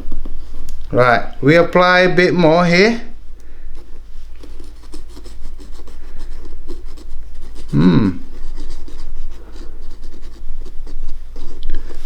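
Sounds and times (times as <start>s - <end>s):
steady low hum: 0.0s - 12.0s
rubbing and scratching on shoe: 3.8s - 12.0s.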